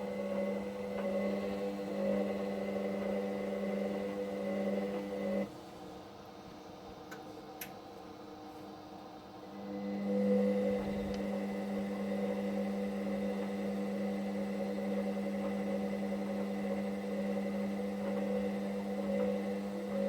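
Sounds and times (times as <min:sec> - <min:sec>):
tumble dryer humming: 0:00.0 - 0:05.5, 0:09.5 - 0:20.0.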